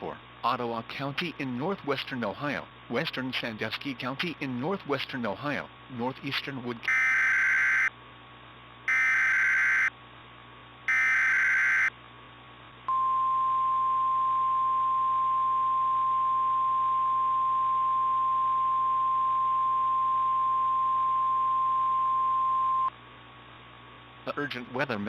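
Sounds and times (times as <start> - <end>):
screeching data bursts: 6.9 - 7.9, 8.9 - 9.9, 10.9 - 11.9
steady warning alarm tone: 6.9 - 7.9, 8.9 - 9.9, 10.9 - 11.9.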